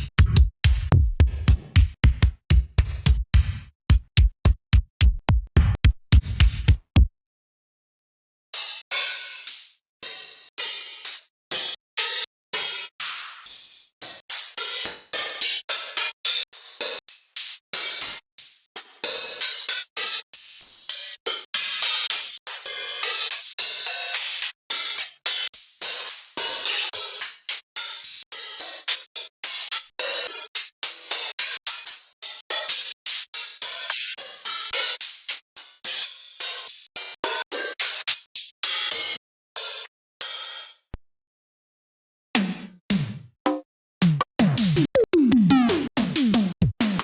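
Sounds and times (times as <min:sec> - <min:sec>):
drum machine hi-hats and cymbals: 0:00.0 - 0:07.1, 0:42.4 - 0:47.0.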